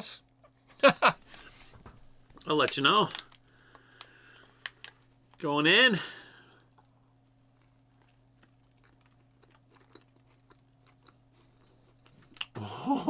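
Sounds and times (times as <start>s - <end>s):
low steady hum: 0.0s - 13.0s
faint chewing: 6.4s - 12.6s.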